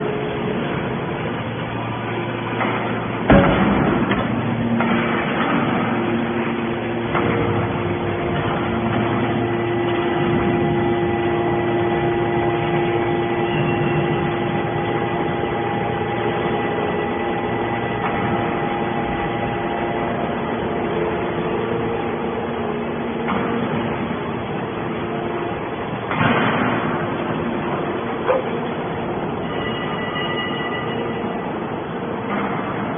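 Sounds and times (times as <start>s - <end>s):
baler machine hum: 0.0s - 32.9s
loud metallic bang: 2.5s - 19.4s, 26.0s - 27.6s.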